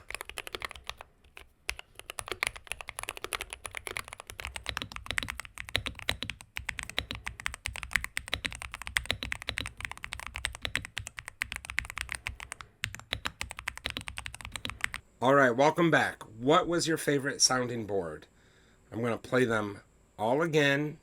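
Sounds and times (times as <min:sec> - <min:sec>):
mechanical keyboard typing: 0:00.0 - 0:15.0.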